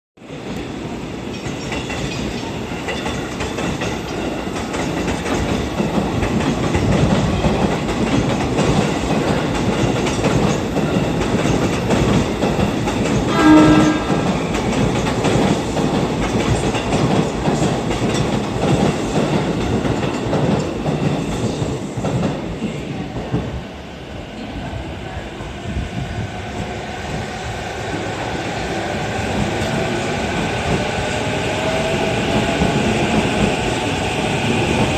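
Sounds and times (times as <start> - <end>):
train and rail noise: 0.2 - 34.9
train horn blast: 13.3 - 14.4.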